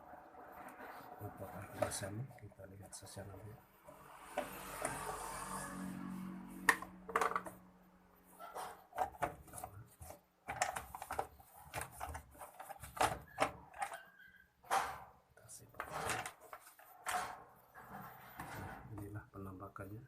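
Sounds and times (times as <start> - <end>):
hands working on washing machine casing: 8.4 - 15.1.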